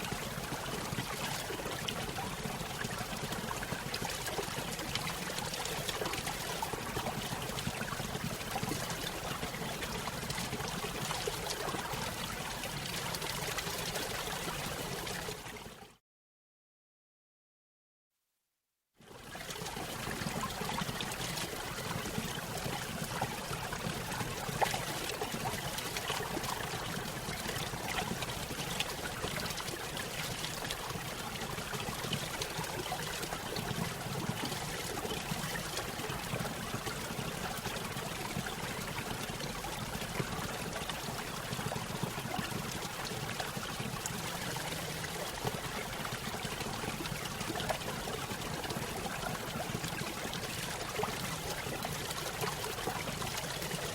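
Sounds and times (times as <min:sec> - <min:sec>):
water trickling and splashing: 0:19.2 - 0:53.9.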